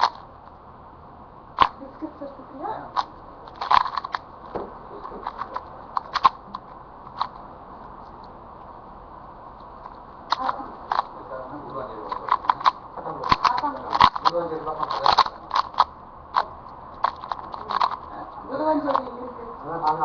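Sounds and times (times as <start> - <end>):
rubik's cube plastic clicks: 0.0 - 0.3, 2.9 - 4.2, 5.1 - 7.4, 9.8 - 11.1, 12.1 - 18.1, 18.8 - 19.2.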